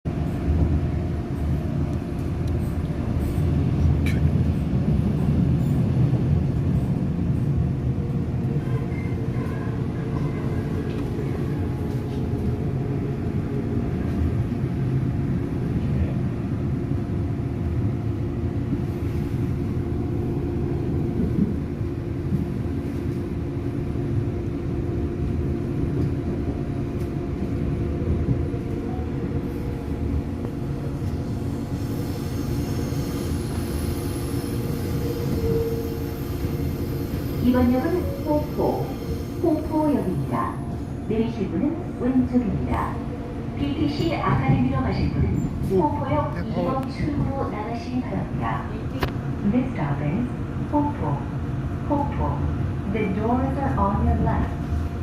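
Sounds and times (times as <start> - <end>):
subway wheels rumbling on rails: 0.0 - 55.0
constant hum: 37.4 - 55.0.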